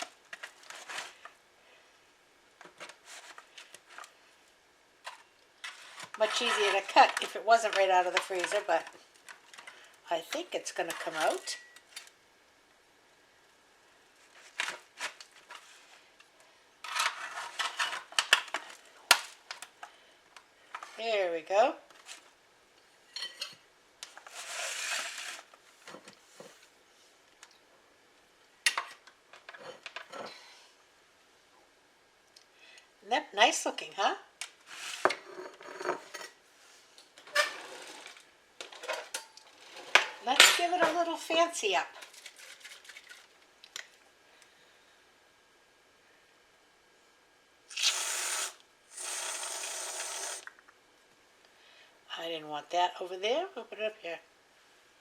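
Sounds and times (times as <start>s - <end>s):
knife scraping pie dish: 5.6s - 7.2s, 24.3s - 25.4s.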